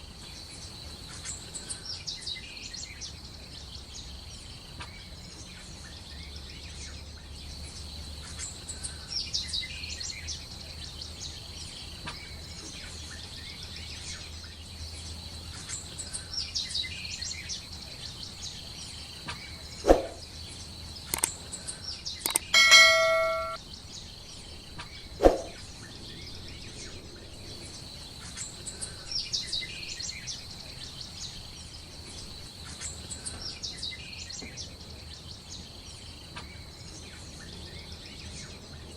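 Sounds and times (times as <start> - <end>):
bird chirps: 18.1 - 23.6
bell-like ding: 22.3 - 23.6.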